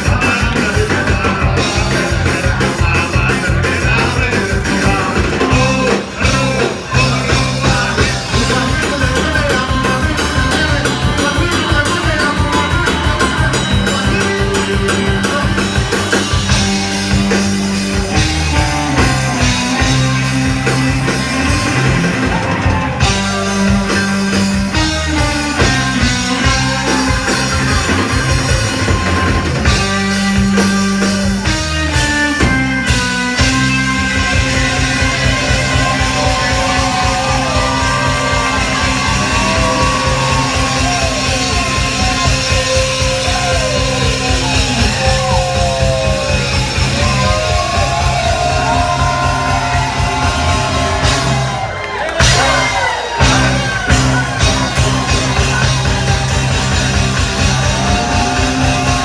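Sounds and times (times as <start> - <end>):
person singing: 0.0 - 30.1
bass line: 0.0 - 59.0
electric guitar: 0.0 - 59.0
fast drumming: 0.0 - 59.0.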